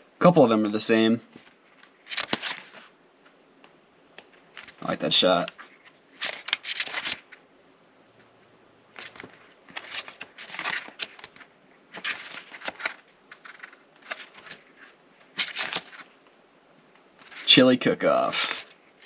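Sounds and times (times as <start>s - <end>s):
paper pages rustling: 1.3s - 3.3s, 4.2s - 7.4s, 8.9s - 16.2s, 17.2s - 17.6s, 18.2s - 19.0s.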